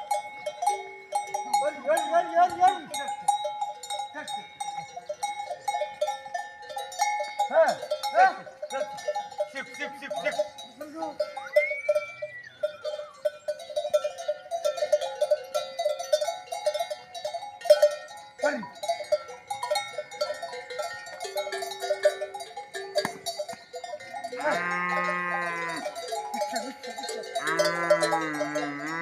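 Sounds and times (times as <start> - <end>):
livestock bells clanking: 0.0 - 29.0.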